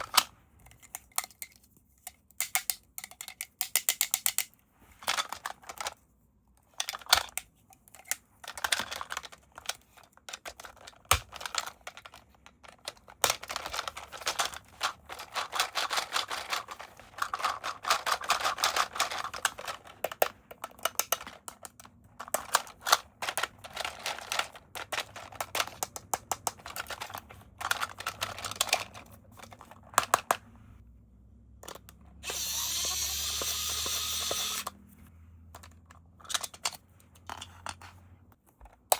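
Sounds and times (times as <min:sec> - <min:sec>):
plastic packaging clicks and crackles: 0:06.7 - 0:30.4.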